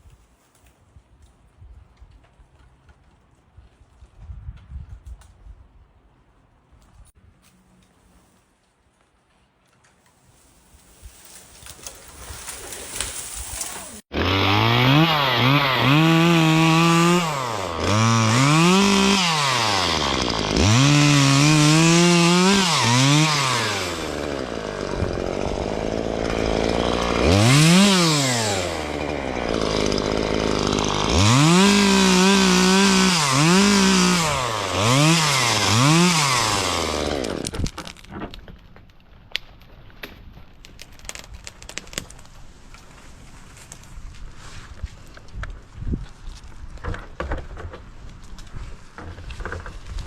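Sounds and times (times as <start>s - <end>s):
chainsaw cutting branches: 10.4s - 38.3s.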